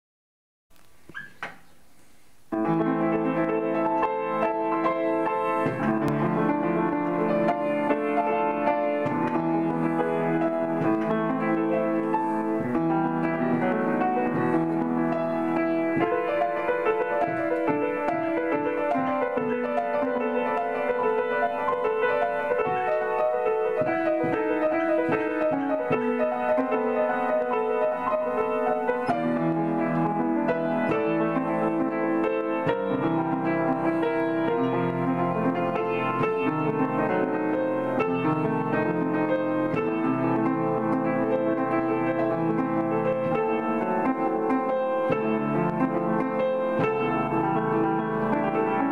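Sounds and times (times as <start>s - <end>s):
piano playing: 2.4s - 48.9s.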